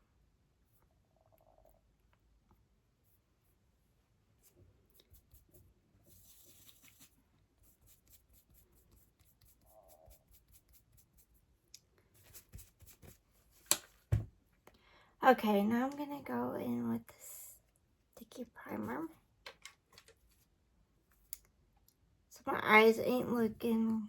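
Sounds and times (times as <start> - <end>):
soft brush strokes: 2.7 - 14.1, 20.0 - 21.3.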